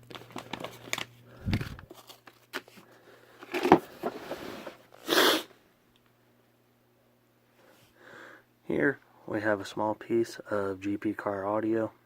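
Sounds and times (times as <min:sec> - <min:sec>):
rustling: 0:03.4 - 0:04.9.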